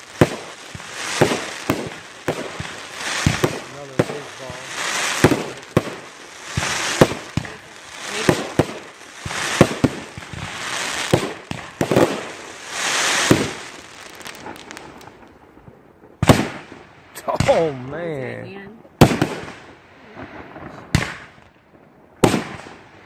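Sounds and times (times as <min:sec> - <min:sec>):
fireworks bangs: 0:00.0 - 0:18.2, 0:19.0 - 0:23.0
fireworks hissing and crackling: 0:00.0 - 0:18.4, 0:19.0 - 0:23.0.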